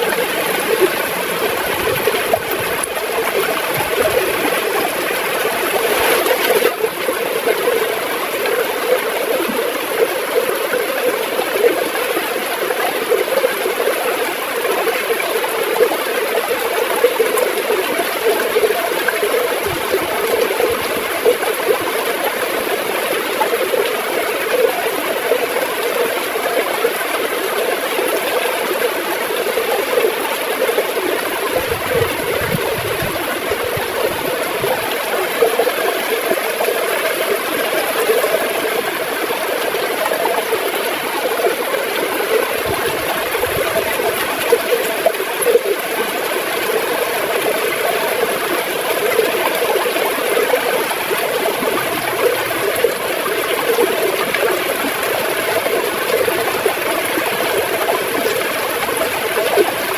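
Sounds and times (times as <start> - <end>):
river water gurgling: 0.0 - 59.9.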